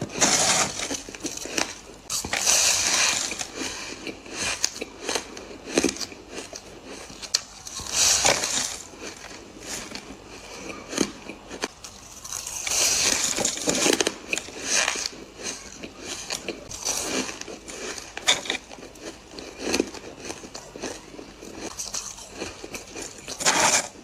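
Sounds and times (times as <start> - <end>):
crunching and chewing ice: 0.0 - 24.0.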